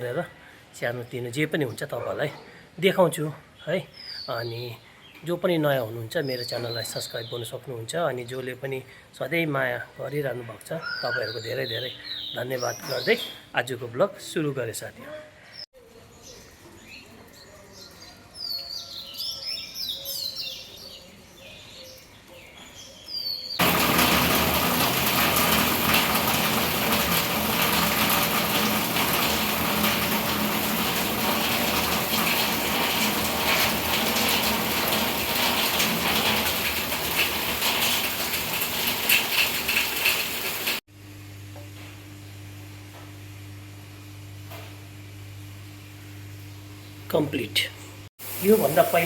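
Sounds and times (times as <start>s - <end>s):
birds chirping: 0.0s - 23.8s
loud heavy rain: 23.6s - 40.8s.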